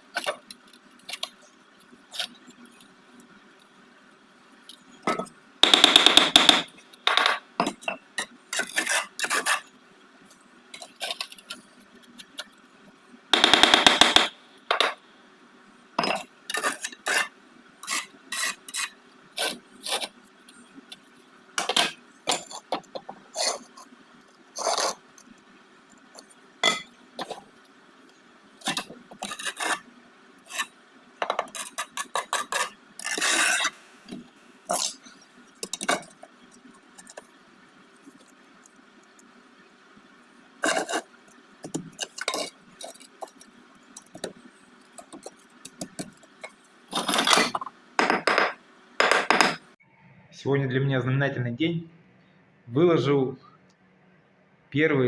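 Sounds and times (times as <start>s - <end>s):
trowel scraping mortar on brick: 7.7s - 9.7s, 16.1s - 21.1s, 22.3s - 23.9s, 24.6s - 25.1s, 28.6s - 30.8s, 31.4s - 36.4s, 40.6s - 47.6s.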